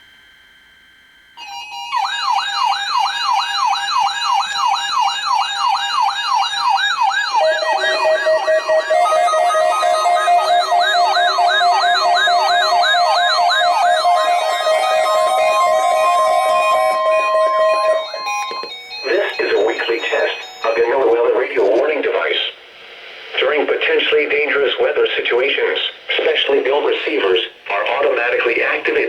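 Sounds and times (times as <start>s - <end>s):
warbling alarm tone: 1.4s - 21.7s
steady high tone: 5.2s - 21.8s
low pulsing beep: 7.4s - 14.2s.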